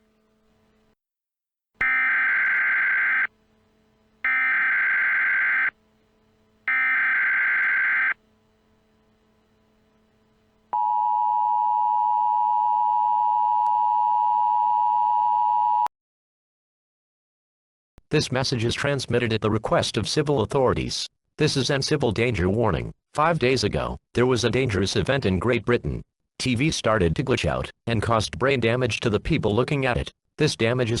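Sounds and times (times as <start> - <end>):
screeching digital header bursts: 1.8 - 3.3, 4.3 - 5.7, 6.7 - 8.2
two-tone attention signal: 1.8 - 3.3, 4.3 - 5.7, 6.7 - 8.2.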